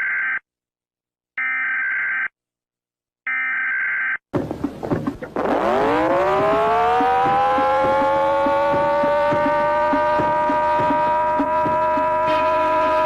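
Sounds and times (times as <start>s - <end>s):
low droning tone gliding up: 5.4s - 13.0s.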